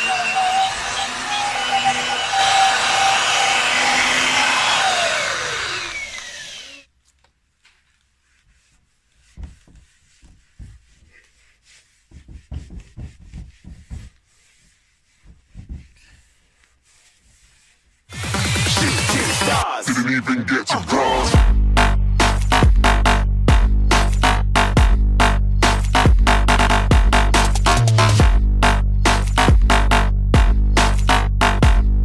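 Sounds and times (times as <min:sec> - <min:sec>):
buffing wheel whining on metal: 0:00.0 - 0:06.9
faint knocks and bumps: 0:09.2 - 0:11.3, 0:12.0 - 0:16.3.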